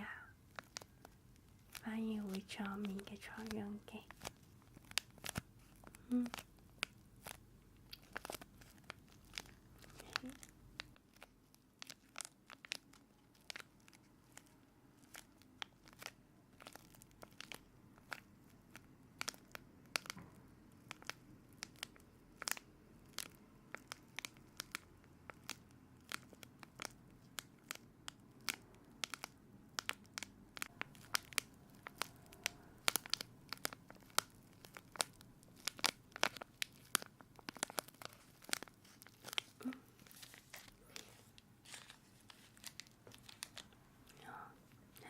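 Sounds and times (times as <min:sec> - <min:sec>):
crinkling and crackling clicks: 0:00.0 - 0:45.0.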